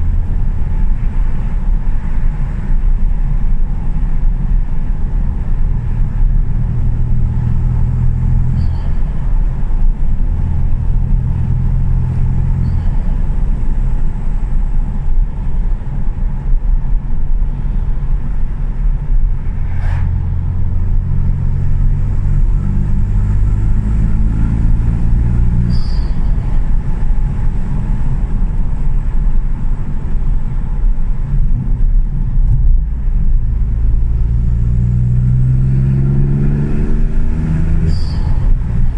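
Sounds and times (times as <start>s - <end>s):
car engine accelerating hard: 19.6s - 28.8s, 32.5s - 38.9s.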